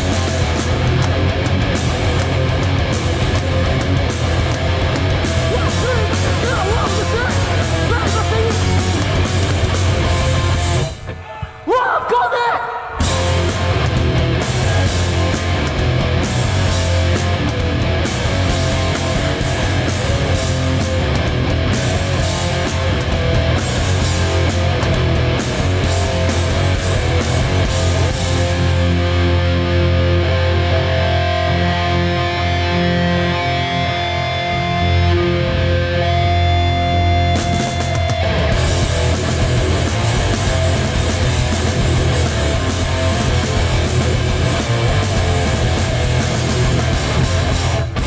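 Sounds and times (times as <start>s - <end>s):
hardcore band playing live: 0.0s - 11.2s, 12.7s - 48.0s
held guitar chords ringing: 13.0s - 48.0s.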